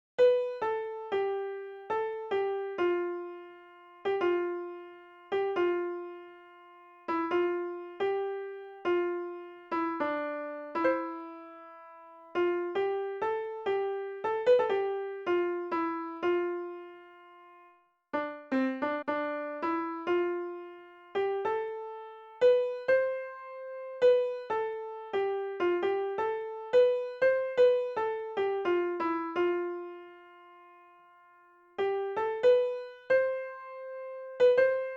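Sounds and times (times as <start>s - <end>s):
simple piano melody: 0.2s - 34.9s.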